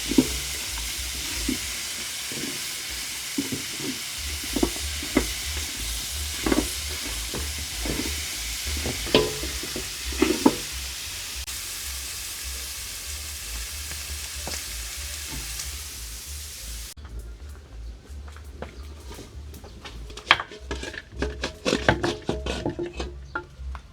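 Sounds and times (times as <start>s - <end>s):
utensil knocking and scraping pan: 0.0s - 11.5s, 13.8s - 16.2s, 18.6s - 23.7s
food sizzling in a pan: 0.0s - 17.0s.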